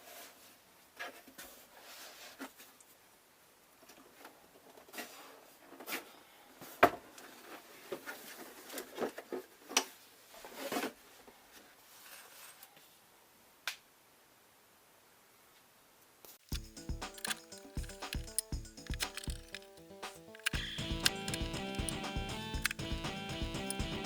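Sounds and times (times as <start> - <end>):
keyboard parts clicking and knocking: 16.4 - 24.0.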